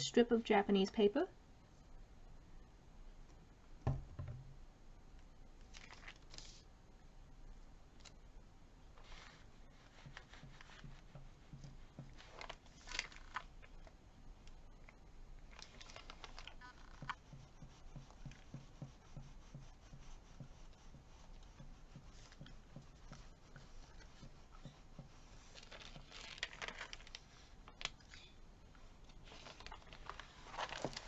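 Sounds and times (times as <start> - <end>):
paper rustling and scratching: 9.0 - 13.6, 15.5 - 27.9, 29.2 - 31.0.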